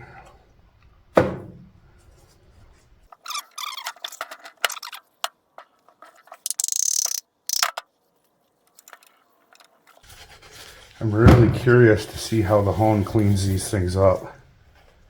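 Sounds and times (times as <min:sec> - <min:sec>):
thump: 0:01.2 - 0:01.7, 0:11.2 - 0:11.7
metal parts clicking and scraping: 0:03.2 - 0:05.2, 0:06.0 - 0:07.8.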